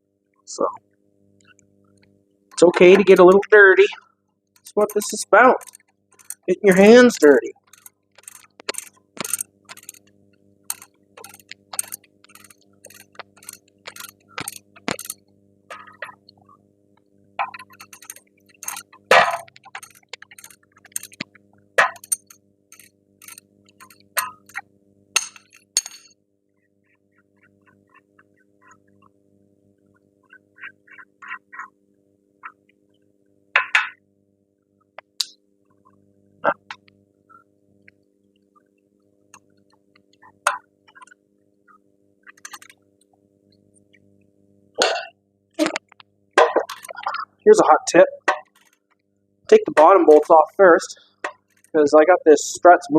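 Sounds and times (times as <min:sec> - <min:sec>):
faint steady hum: 0:00.0 - 0:52.9
metal hand tools clinking: 0:04.8 - 0:06.5, 0:07.7 - 0:10.0, 0:10.7 - 0:15.8, 0:17.6 - 0:18.9, 0:19.7 - 0:21.2, 0:21.8 - 0:24.6.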